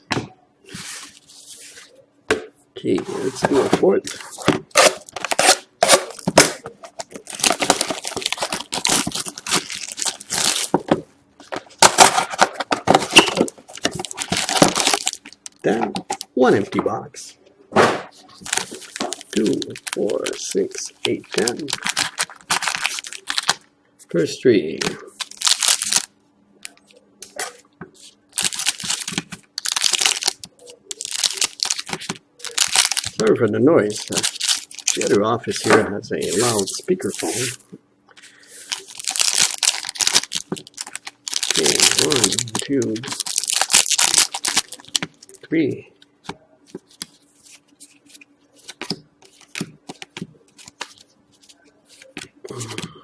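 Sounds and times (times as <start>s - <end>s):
faint steady hum: 0.0s - 53.0s
wrapping and cardboard tearing: 4.7s - 10.8s, 11.8s - 15.2s, 21.2s - 23.6s, 25.2s - 26.1s, 28.4s - 33.2s, 33.9s - 35.1s, 36.2s - 37.6s, 38.6s - 45.1s.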